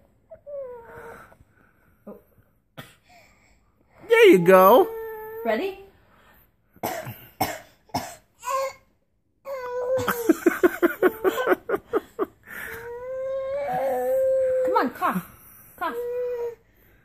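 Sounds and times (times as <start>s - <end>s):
cough-like bursts: 6.8s - 8.3s
baby girl sobbing and crying: 9.5s - 11.8s, 12.6s - 14.8s.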